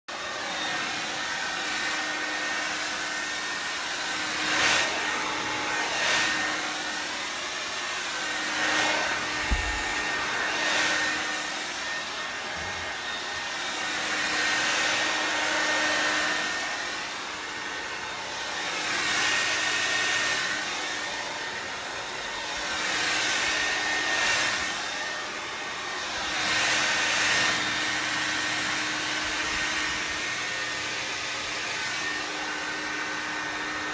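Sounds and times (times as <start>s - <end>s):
hair dryer blowing: 0.1s - 33.9s
low thump: 9.4s - 10.0s.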